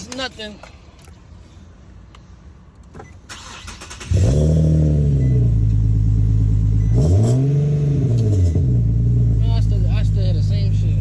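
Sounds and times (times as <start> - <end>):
car engine starting and idling: 2.8 - 11.0
car engine revving: 3.3 - 11.0.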